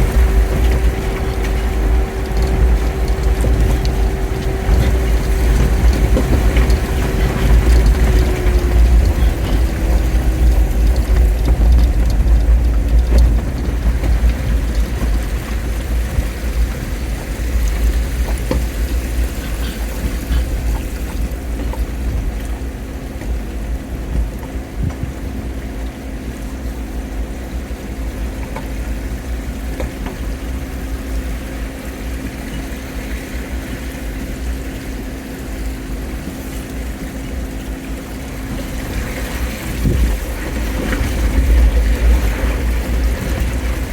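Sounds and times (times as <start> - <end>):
car engine humming: 0.0 - 25.9
heavy low rumble: 0.0 - 27.2, 37.4 - 43.9.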